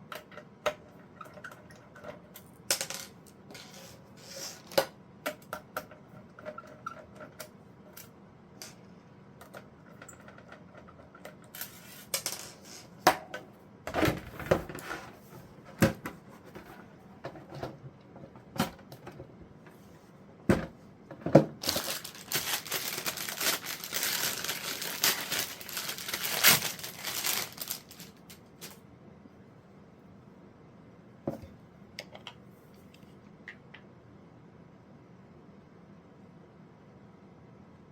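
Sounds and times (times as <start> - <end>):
rustling and crinkling: 14.0 - 28.8.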